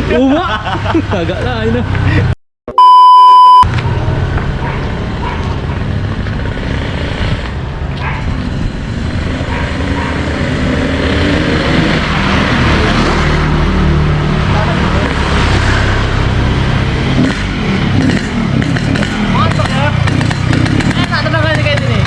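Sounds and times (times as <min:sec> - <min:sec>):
loud steady beep: 0:02.7 - 0:03.7
motorcycle engine running: 0:16.8 - 0:22.0.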